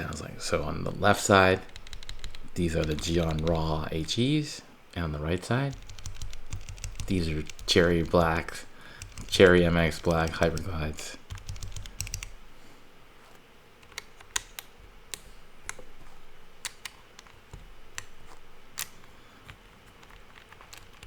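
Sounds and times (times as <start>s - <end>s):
keyboard keys clacking: 0.6s - 4.2s, 5.7s - 12.4s.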